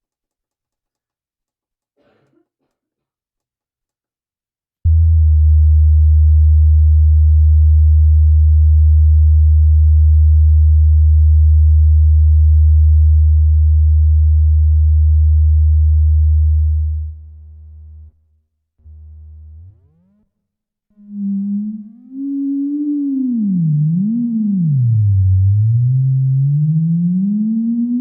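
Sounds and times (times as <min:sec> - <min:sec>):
theremin low steady tone: 0:04.9 - 0:18.1, 0:20.9 - 0:28.0.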